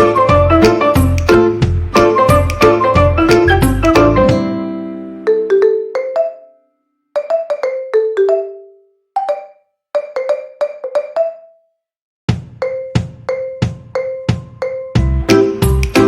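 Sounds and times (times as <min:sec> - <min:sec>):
struck melodic notes: 0:00.0 - 0:06.5
low drum beat: 0:00.2 - 0:04.4.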